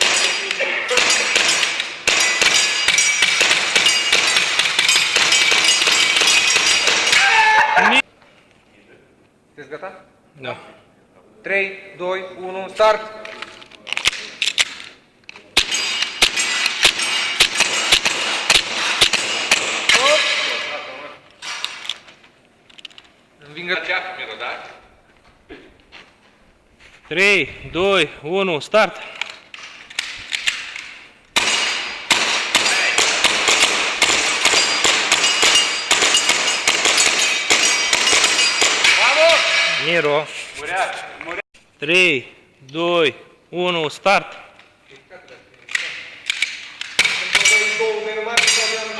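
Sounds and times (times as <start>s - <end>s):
airsoft pistol shots: 31.4s - 39.0s.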